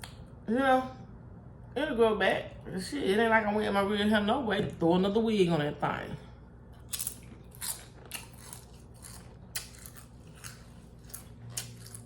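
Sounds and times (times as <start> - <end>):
person chewing food: 6.7 - 12.0.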